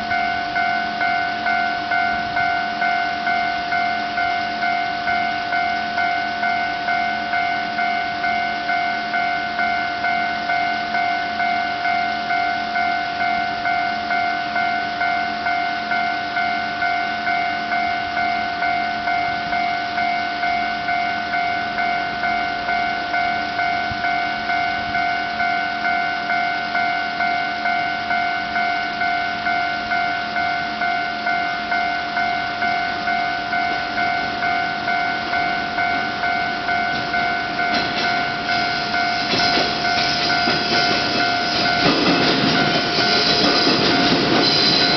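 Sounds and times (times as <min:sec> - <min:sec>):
level crossing alarm dinging: 0:00.0 - 0:44.9
approaching train rumble: 0:35.5 - 0:44.9.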